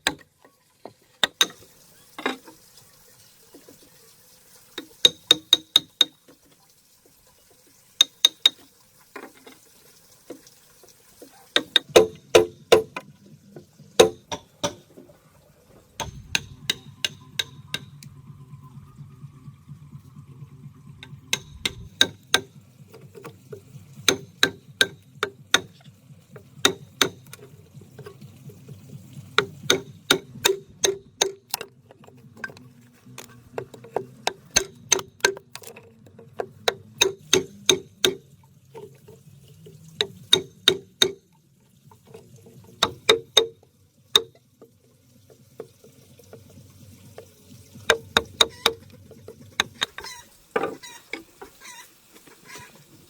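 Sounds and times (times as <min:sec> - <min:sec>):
hammer tapping: 0:05.0 - 0:06.1, 0:11.6 - 0:13.0, 0:14.0 - 0:14.8, 0:16.0 - 0:18.1, 0:21.0 - 0:23.4, 0:24.0 - 0:28.1, 0:29.4 - 0:32.6, 0:33.5 - 0:38.2, 0:40.0 - 0:41.2, 0:42.8 - 0:43.6.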